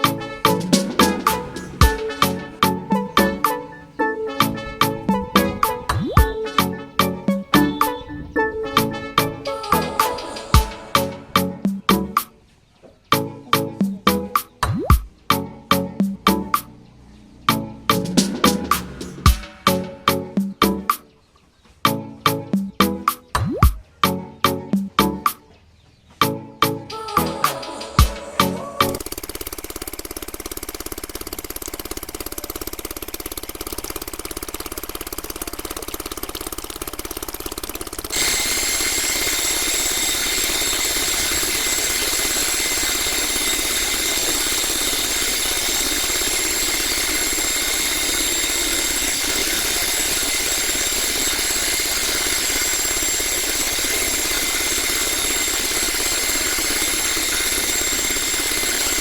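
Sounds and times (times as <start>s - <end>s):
small electric motors running: 0.0s - 12.3s, 27.0s - 59.0s
high motor whine: 0.0s - 12.4s, 15.2s - 20.9s, 26.9s - 30.0s, 35.4s - 59.0s.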